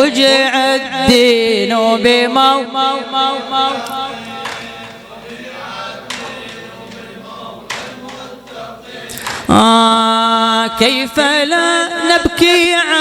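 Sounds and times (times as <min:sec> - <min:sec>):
man chanting: 0:00.0 - 0:08.9, 0:09.5 - 0:13.0
group chanting: 0:03.1 - 0:10.5.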